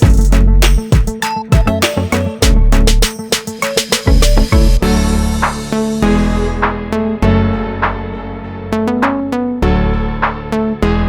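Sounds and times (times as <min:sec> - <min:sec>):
upbeat music with drums and bass: 0:00.0 - 0:07.0, 0:07.8 - 0:08.2, 0:10.2 - 0:10.6.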